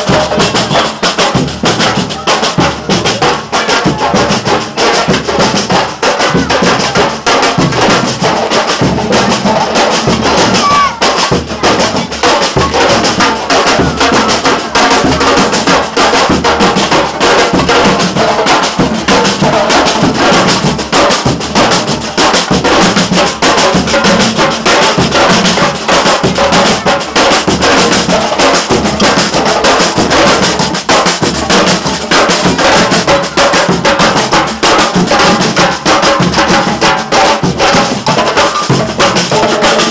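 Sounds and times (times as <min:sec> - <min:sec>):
drum group playing: 0:00.0 - 0:39.9.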